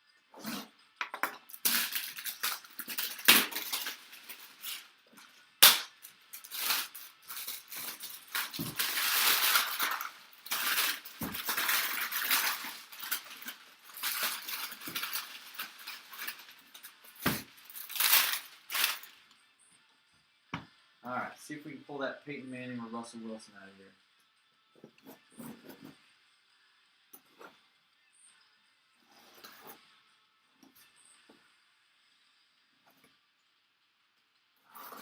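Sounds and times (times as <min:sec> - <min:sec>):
plastic wrap crackling and rustling: 0:01.3 - 0:19.4.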